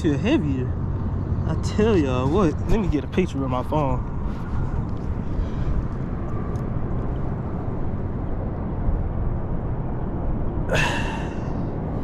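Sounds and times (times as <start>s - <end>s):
wind buffeting microphone: 0.0s - 12.0s
breathy rush: 10.7s - 12.0s.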